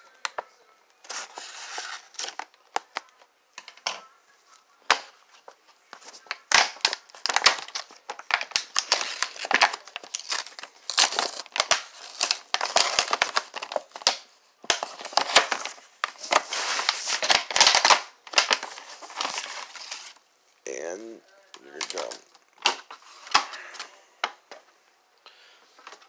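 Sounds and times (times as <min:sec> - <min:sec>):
plastic packaging crinkling: 0:01.0 - 0:04.0, 0:04.9 - 0:20.2, 0:21.6 - 0:23.8.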